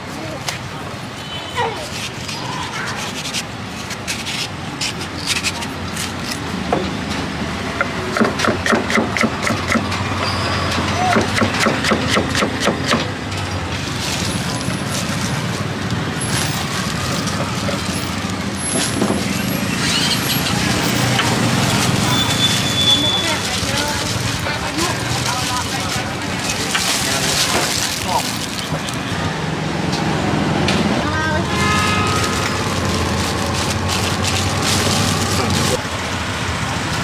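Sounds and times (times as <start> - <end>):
street traffic: 0.0 - 37.0
voices: 14.2 - 29.3, 30.7 - 35.9.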